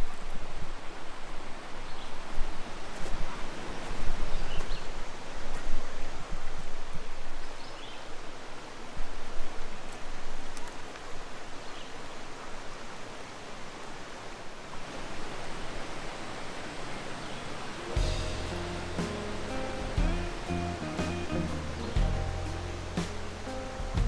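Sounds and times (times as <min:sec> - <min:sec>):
water rushing over dam: 0:08.5 - 0:24.0
low rumbles: 0:18.0 - 0:24.0.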